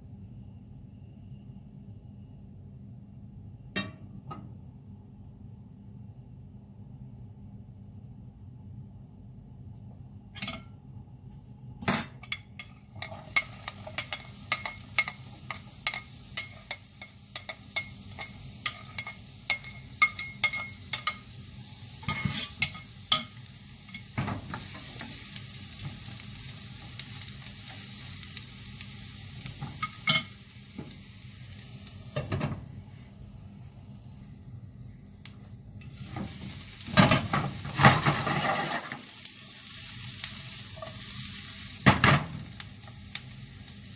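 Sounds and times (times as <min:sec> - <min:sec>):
metal utensil scraping a pan: 0:12.1 - 0:21.2, 0:22.0 - 0:23.3, 0:37.7 - 0:39.0
food sizzling in a pan: 0:12.1 - 0:34.8, 0:35.8 - 0:43.9.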